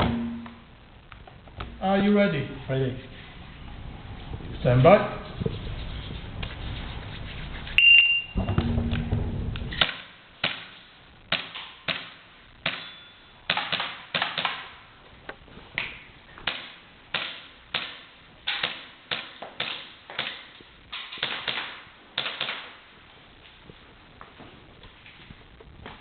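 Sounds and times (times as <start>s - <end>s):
shot timer beep: 0.0s - 0.6s, 7.8s - 9.0s
airsoft pistol shots: 9.7s - 14.7s.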